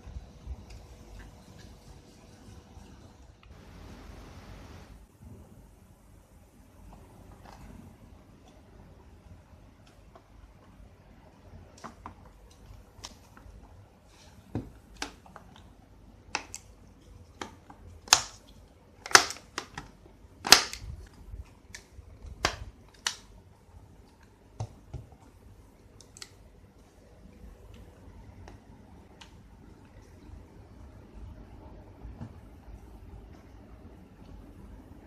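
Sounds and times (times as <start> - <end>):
plastic and metal clicks and snaps: 16.3 - 16.7, 17.4 - 23.3.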